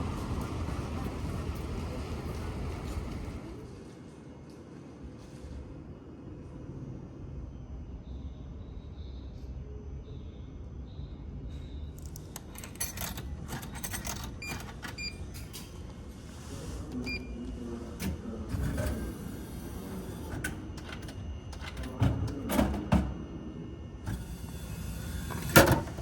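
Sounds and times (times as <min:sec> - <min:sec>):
steady low rumble: 0:00.0 - 0:03.7
vending machine clicks and clinks: 0:11.9 - 0:15.9, 0:18.0 - 0:23.2, 0:24.1 - 0:26.0.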